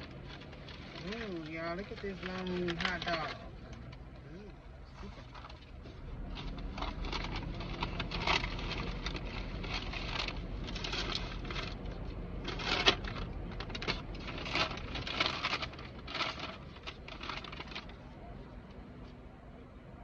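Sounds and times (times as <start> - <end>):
low steady hum: 0.0 - 20.0
food packaging crinkling: 5.2 - 18.1.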